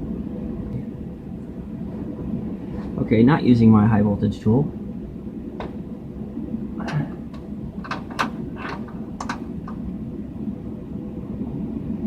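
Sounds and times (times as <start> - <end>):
steady low hum: 0.0 - 12.0
knob clicking and scraping: 6.9 - 9.8.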